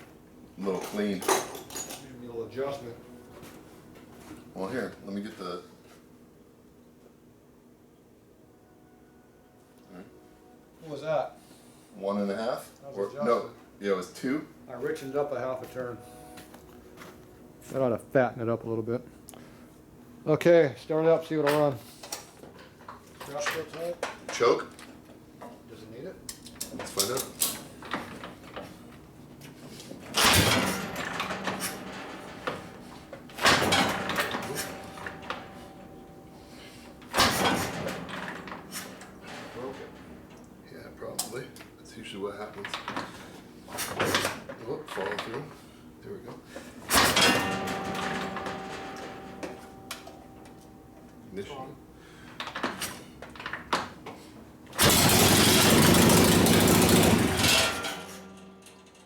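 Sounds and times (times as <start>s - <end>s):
starter clicks and knocks: 30.1s - 36.4s
motorcycle kick-start clunk: 30.2s - 32.7s, 54.8s - 59.0s
motorcycle engine running loudly: 54.8s - 57.6s.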